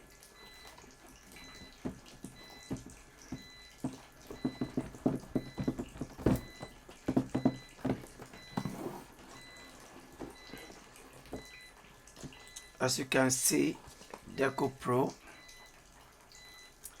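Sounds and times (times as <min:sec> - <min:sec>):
cardboard packaging handled: 0:03.8 - 0:10.7.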